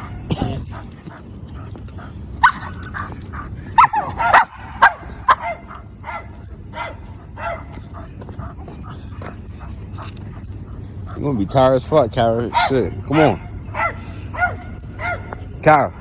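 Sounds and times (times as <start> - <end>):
dog barking and yipping: 0.0 - 11.5, 12.2 - 15.6.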